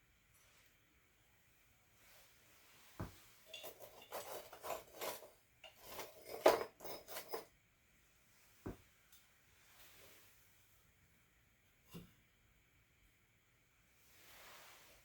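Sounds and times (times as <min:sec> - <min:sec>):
utensils scraping in ash: 0:03.5 - 0:07.4.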